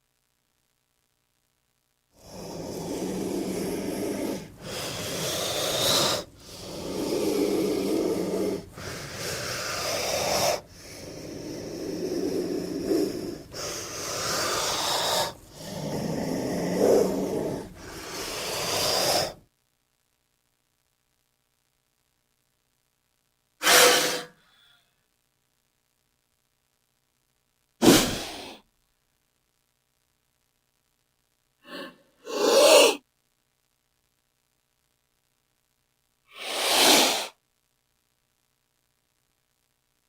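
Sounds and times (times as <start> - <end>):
snake hissing: 2.2 - 19.4, 23.6 - 24.4, 27.8 - 28.6, 31.6 - 33.0, 36.3 - 37.4.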